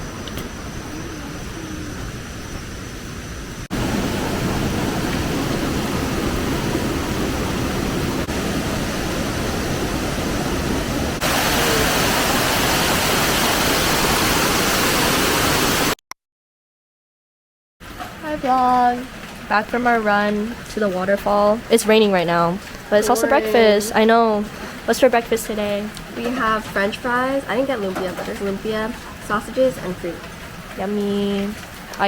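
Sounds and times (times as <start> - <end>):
waterfall rushing: 3.7 - 16.0.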